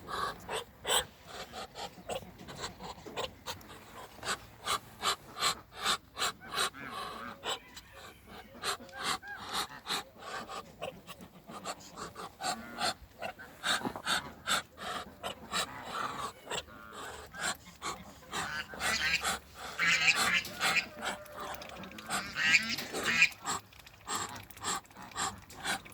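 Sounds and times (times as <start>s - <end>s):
ducks huffing calls: 0.0s - 25.9s.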